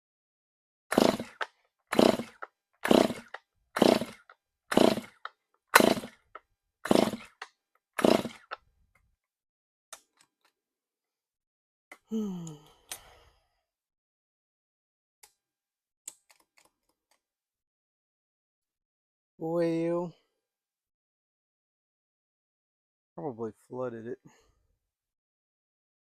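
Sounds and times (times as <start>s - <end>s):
chainsaw starter cord pulls: 0.9s - 8.7s.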